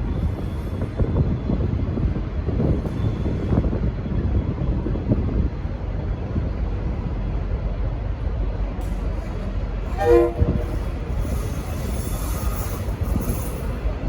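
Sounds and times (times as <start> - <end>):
diesel locomotive rumbling: 0.0 - 14.0
locomotive horn toot: 9.9 - 10.9.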